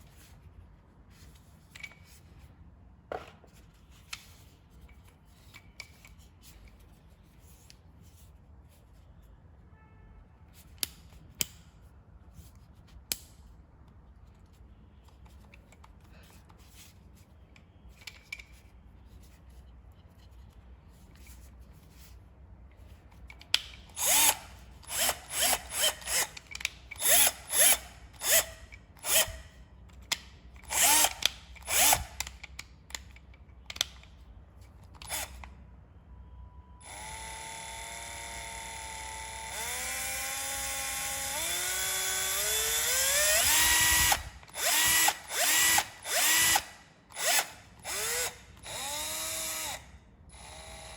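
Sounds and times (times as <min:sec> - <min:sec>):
cordless drill motor: 0:24.0 - 0:29.6, 0:30.6 - 0:32.4, 0:35.0 - 0:35.4, 0:36.8 - 0:50.9.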